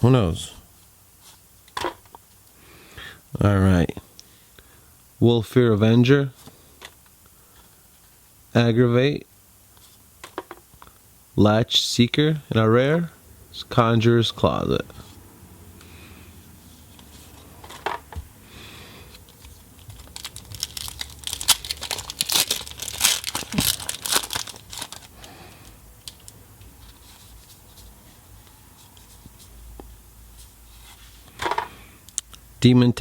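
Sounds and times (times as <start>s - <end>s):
foil wrapper tearing and crinkling: 19.4s - 25.4s.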